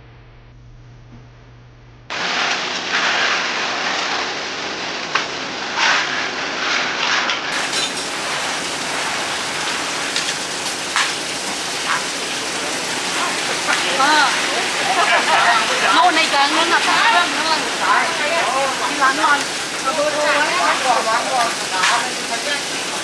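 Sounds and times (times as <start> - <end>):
heavy rain: 2.1 - 23.0
sharp drips: 7.5 - 23.0.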